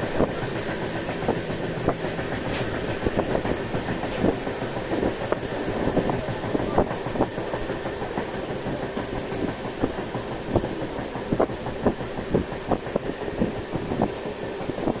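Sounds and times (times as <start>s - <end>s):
train rumble: 0.0s - 15.0s
train wheels clicking over rail joints: 0.0s - 15.0s.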